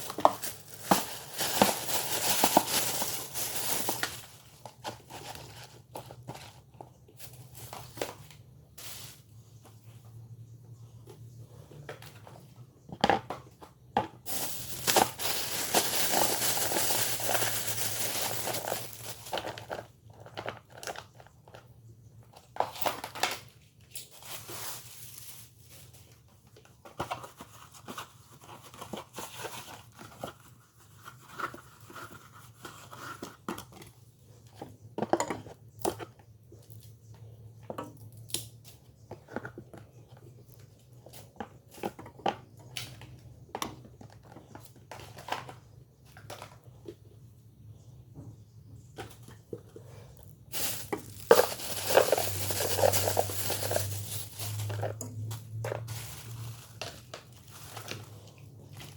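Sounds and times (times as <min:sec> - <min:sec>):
plastic packaging crinkling: 0:00.0 - 0:06.6, 0:14.2 - 0:21.4, 0:22.4 - 0:26.4, 0:50.5 - 0:58.9
items clicking and knocking: 0:00.0 - 0:08.5, 0:11.1 - 0:24.4, 0:26.2 - 0:47.3, 0:48.1 - 0:58.9.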